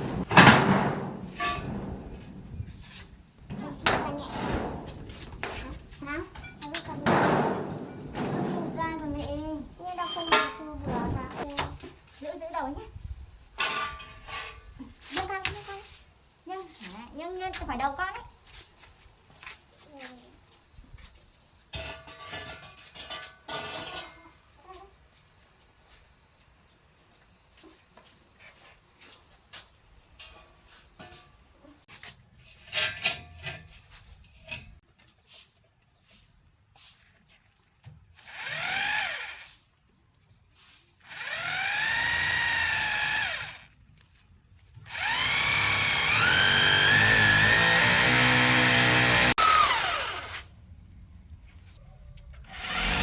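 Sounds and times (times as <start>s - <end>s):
small motor whirring: 38.2s - 39.6s, 41.0s - 43.7s, 44.9s - 50.5s.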